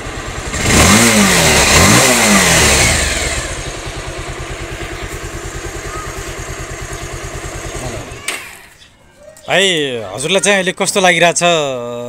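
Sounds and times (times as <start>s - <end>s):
motorcycle engine revving and idling: 0.0s - 8.9s.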